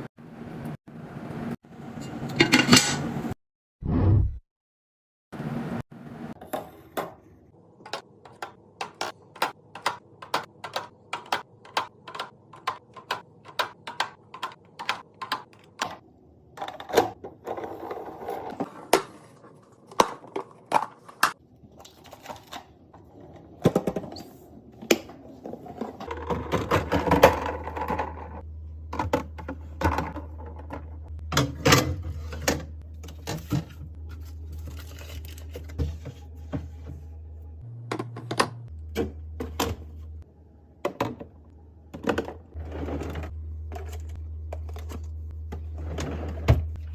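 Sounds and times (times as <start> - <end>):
items set down clicking and tapping: 7.8 - 16.0, 28.8 - 37.0, 37.9 - 39.9, 40.8 - 42.4.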